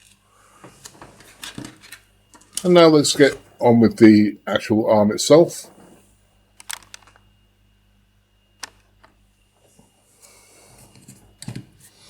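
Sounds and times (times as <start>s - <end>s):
plastic parts clicking on table: 6.6s - 7.2s.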